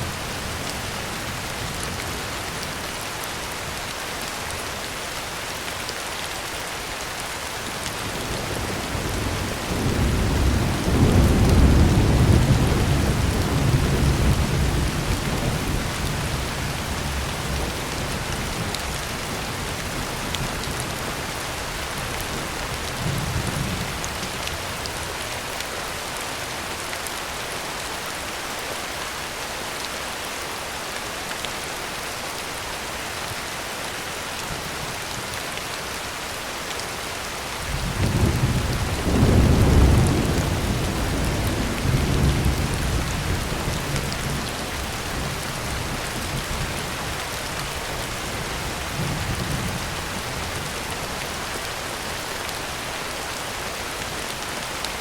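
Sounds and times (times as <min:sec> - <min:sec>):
heavy rain on a tin roof: 0:00.0 - 0:55.0
rolling thunder: 0:37.7 - 0:46.6.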